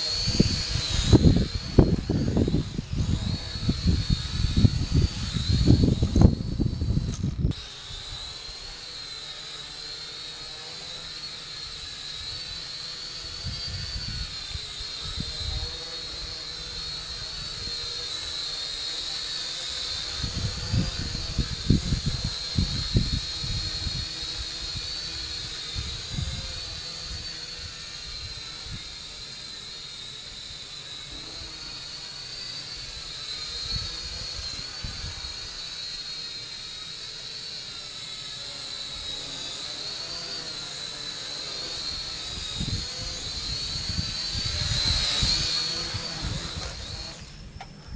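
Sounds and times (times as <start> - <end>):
quadcopter motors whining: 0.0 - 47.9
wind buffeting microphone: 0.2 - 7.6, 20.1 - 24.9, 42.3 - 47.3.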